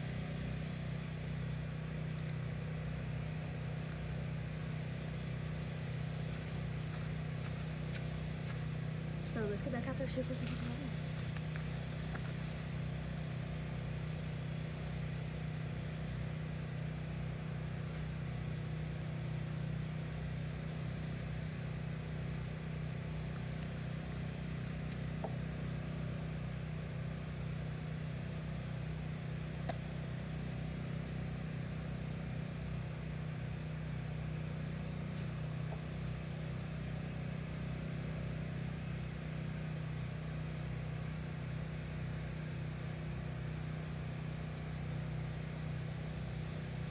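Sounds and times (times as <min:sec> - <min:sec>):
low motor hum: 0:00.0 - 0:46.9.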